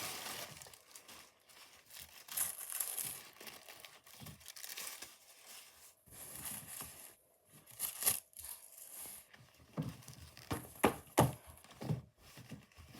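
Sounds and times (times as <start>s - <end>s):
sharp packaging crackles: 0.0s - 5.9s
packaging crinkling and tearing: 0.0s - 7.0s, 7.6s - 10.5s.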